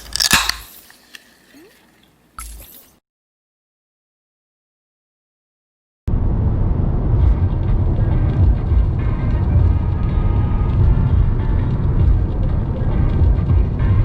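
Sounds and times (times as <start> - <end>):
low rumbling noise: 6.1 - 14.0.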